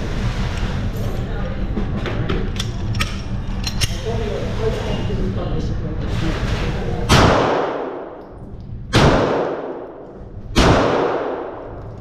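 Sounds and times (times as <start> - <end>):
gunshots with echoing tail: 7.1 - 8.2, 8.9 - 11.8.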